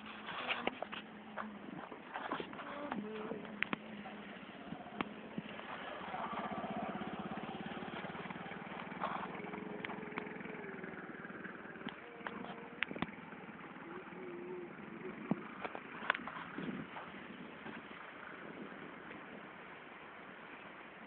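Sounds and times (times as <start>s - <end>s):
small engine running: 4.2s - 17.8s.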